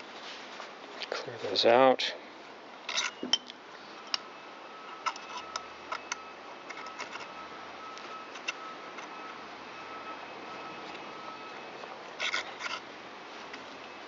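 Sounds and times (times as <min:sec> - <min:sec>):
faint steady high tone: 0:03.0 - 0:12.3.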